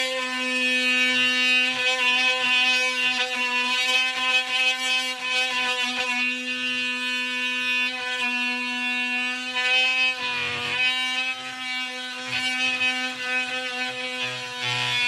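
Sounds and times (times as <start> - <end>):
oscillating tool cutting wood: 0.0 - 15.0.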